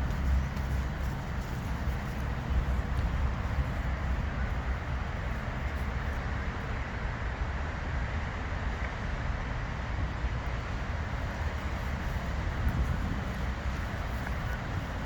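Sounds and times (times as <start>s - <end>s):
wind buffeting microphone: 0.0s - 7.0s, 10.0s - 15.0s.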